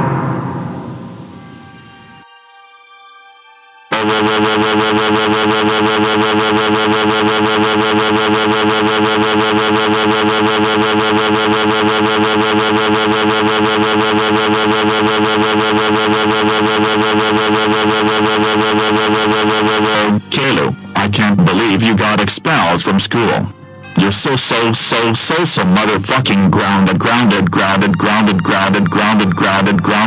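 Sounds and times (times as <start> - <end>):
loud buzzing drone: 3.9 - 23.5, 24.5 - 30.0.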